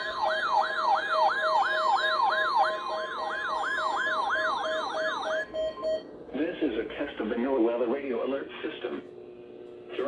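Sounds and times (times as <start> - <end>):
siren-like sweeping tone: 0.0 - 6.0
lower tone beeping: 5.3 - 6.2.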